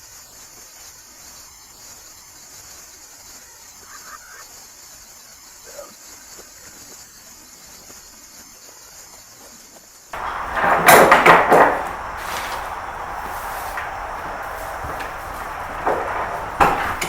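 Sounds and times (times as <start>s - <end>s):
crickets chirring: 0.0s - 17.0s
loud clattering with knocks: 10.2s - 17.0s
low steady rush: 10.2s - 17.0s.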